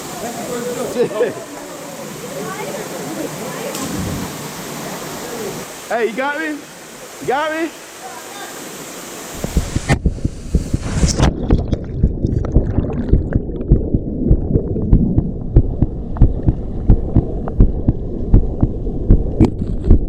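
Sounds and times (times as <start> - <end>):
muffled turbulent water underwater: 9.4 - 20.0
underwater knocks and thumps: 9.4 - 20.0.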